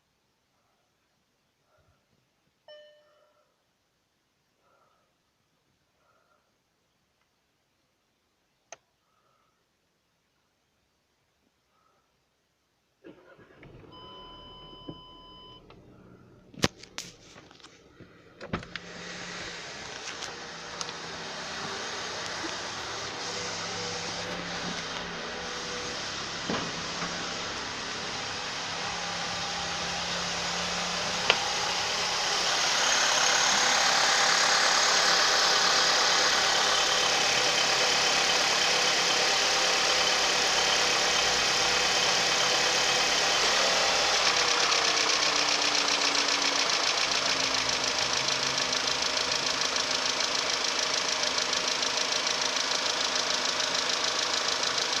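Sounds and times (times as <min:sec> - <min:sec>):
car engine running: 0:13.4 - 0:55.0
engine knock: 0:31.3 - 0:55.0.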